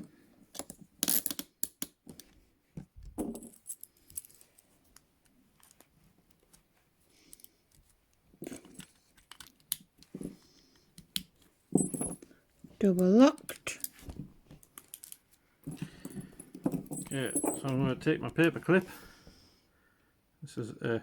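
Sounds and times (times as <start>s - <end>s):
handcuffs clicking and rattling: 8.5s - 10.1s, 14.6s - 17.8s.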